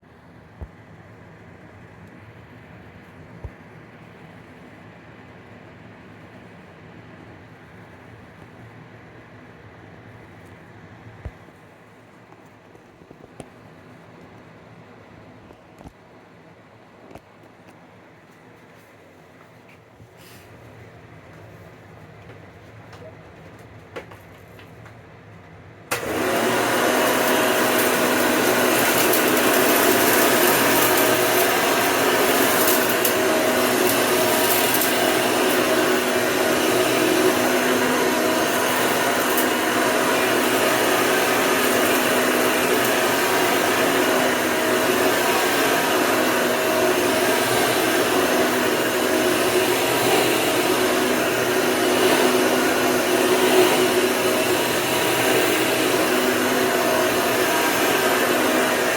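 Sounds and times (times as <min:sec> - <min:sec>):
vacuum cleaner motor whining: 0:25.9 - 0:58.9.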